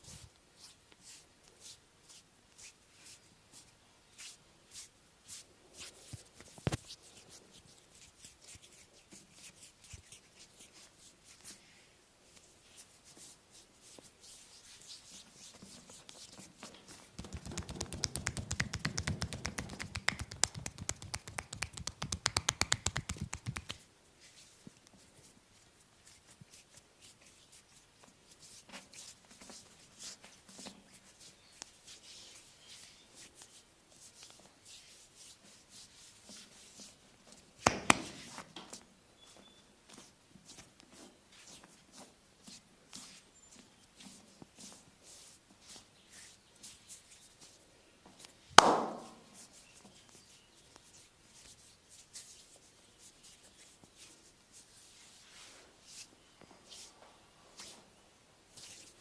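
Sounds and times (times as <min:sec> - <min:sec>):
hands striking bare skin: 0:17.2 - 0:23.8, 0:37.6 - 0:38.4, 0:48.6 - 0:49.2
sharp cracks: 0:17.2 - 0:23.8, 0:48.6 - 0:49.2.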